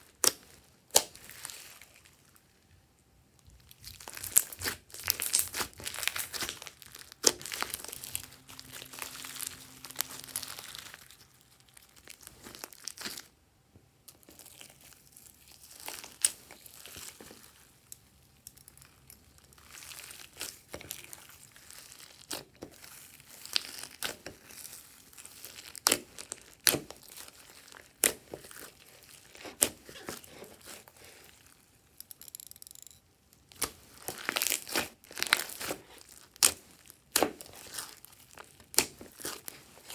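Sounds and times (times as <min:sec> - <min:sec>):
slime squeezed by hand crackling: 0:03.7 - 0:13.3, 0:33.5 - 0:39.9.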